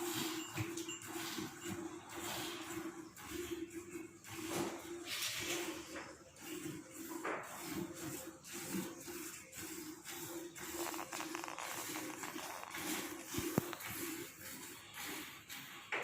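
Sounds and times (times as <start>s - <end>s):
milk squirting into a bucket: 6.5s - 15.7s.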